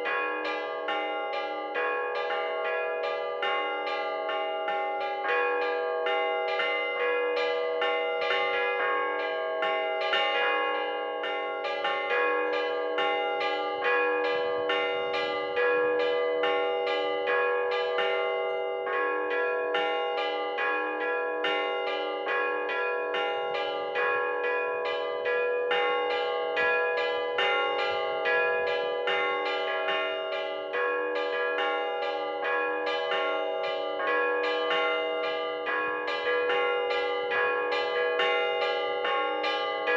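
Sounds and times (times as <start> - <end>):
church bells rung rapidly: 0.0 - 39.9.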